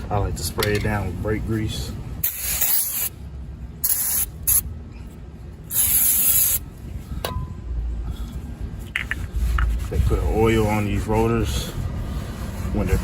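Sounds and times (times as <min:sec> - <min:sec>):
aerosol spray bursts: 0:02.2 - 0:03.1, 0:03.8 - 0:04.6, 0:05.7 - 0:06.6.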